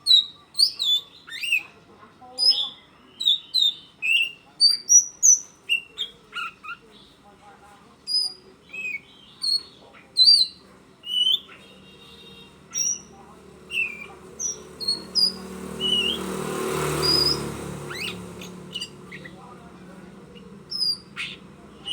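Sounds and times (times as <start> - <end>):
songbird whistled notes: 8.0 - 16.3, 16.9 - 19.3, 20.4 - 21.9.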